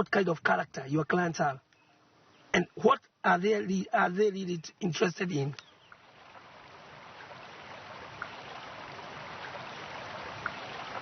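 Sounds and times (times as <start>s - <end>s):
faint clicks: 1.6s - 1.9s, 5.5s - 6.4s, 8.1s - 8.4s, 10.3s - 11.0s
stream water rushing: 5.7s - 11.0s.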